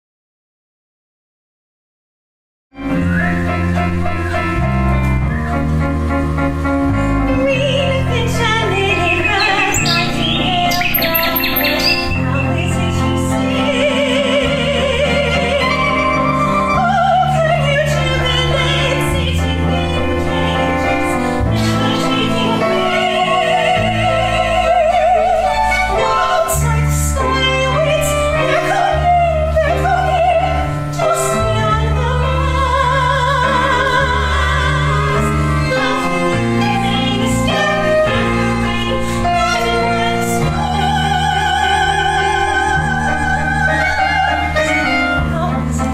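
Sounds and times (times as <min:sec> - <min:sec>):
orchestral accompaniment: 0:02.8 - 0:32.8
woman singing operatically: 0:07.1 - 0:45.9.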